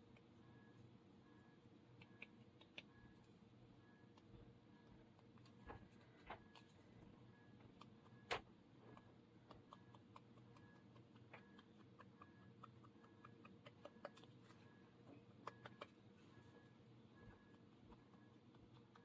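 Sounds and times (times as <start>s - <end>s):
faint clicks and ticks: 7.6s - 19.0s.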